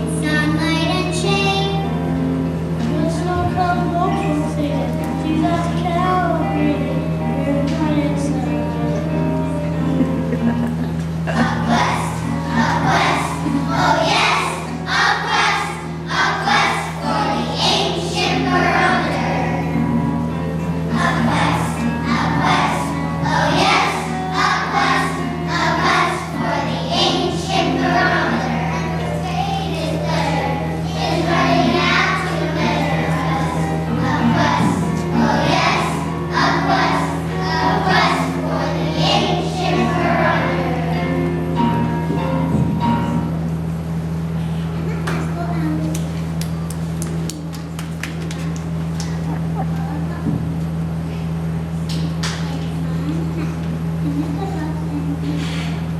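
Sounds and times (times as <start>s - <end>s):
musical accompaniment: 0.0s - 44.6s
steady low hum: 0.0s - 55.9s
children singing in chorus: 11.3s - 19.8s, 20.9s - 41.0s.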